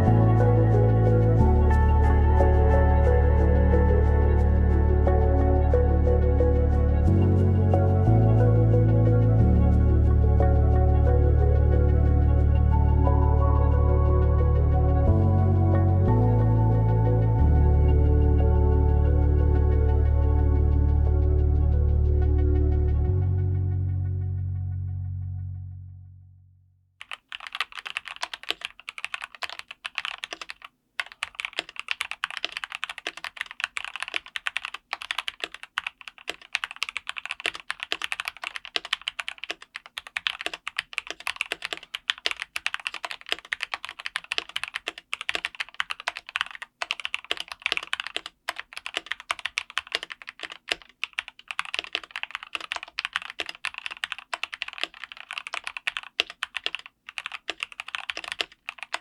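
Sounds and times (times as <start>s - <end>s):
fast typing on mechanical keyboard: 27.0s - 59.0s.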